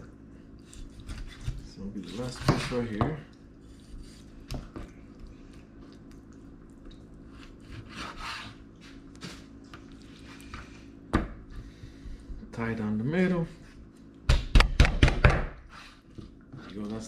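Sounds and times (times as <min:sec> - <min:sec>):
knife scraping cutting board: 0:00.7 - 0:03.0, 0:07.3 - 0:09.5, 0:15.7 - 0:16.7.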